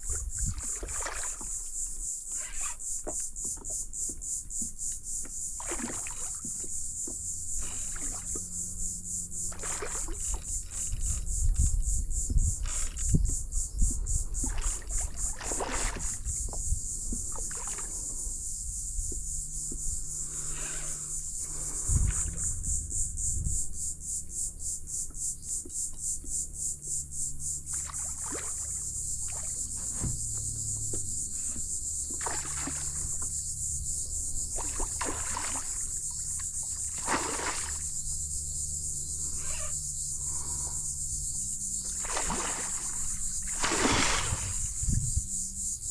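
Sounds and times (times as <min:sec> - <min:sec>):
water splashing around kayak: 0:00.0 - 0:23.0, 0:27.6 - 0:45.6
insects buzzing: 0:00.0 - 0:45.9
low rumble: 0:16.3 - 0:24.5.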